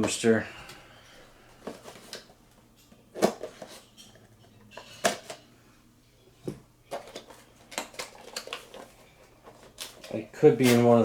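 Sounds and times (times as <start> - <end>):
plastic packaging clicks and rattles: 3.1 - 5.4, 6.9 - 10.9.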